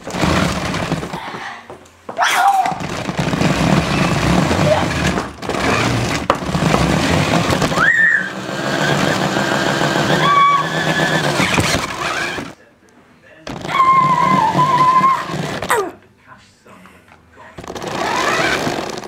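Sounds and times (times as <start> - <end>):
toy car electric motor whirring: 0.0 - 1.2, 2.5 - 12.6, 13.5 - 15.9, 17.6 - 19.0.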